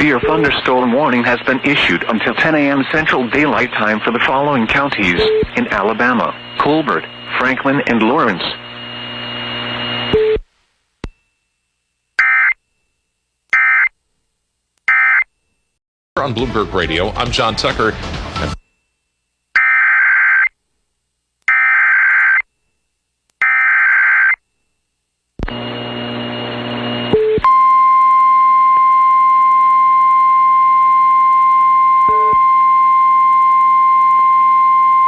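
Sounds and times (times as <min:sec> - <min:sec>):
radio hiss: 0:00.0 - 0:10.1
single-pitch warning alarm tone: 0:11.2 - 0:13.9.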